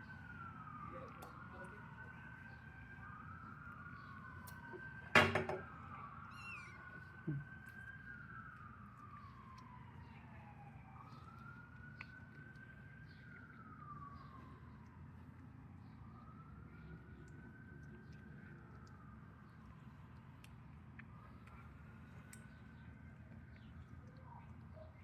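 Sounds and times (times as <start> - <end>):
siren wailing: 0.0 - 15.2, 15.8 - 19.8
sudden loud knock: 5.2 - 5.6.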